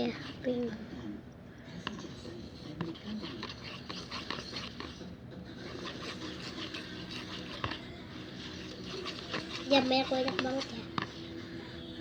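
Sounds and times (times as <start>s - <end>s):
slime squelching: 5.7s - 11.4s.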